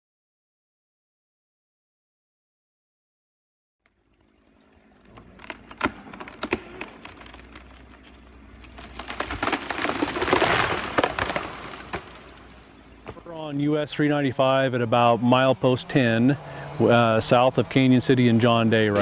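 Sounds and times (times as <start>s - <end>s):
wood cracking and snapping: 4.0s - 13.6s
branches breaking: 4.0s - 15.4s, 16.0s - 19.0s
tree crashing down: 4.0s - 19.0s.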